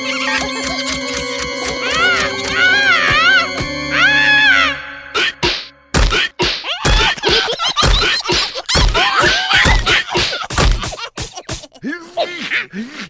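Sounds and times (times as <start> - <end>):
heavy thumps: 5.4 - 9.0.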